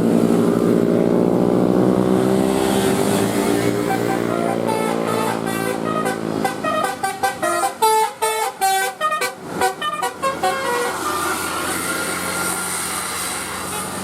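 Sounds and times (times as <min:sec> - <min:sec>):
bus engine humming: 0:00.0 - 0:14.0
multi-tone bus horn tune: 0:02.8 - 0:14.0.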